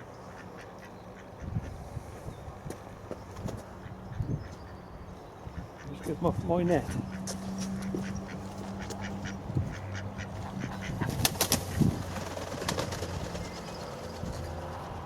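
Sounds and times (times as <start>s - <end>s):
ducks quacking: 0.0s - 1.8s, 3.6s - 13.6s.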